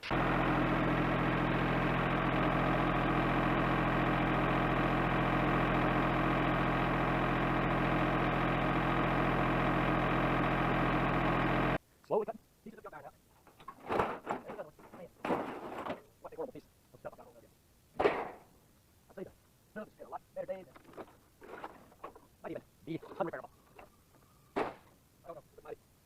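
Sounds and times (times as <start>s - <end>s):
steady machine hum: 0.0s - 11.8s.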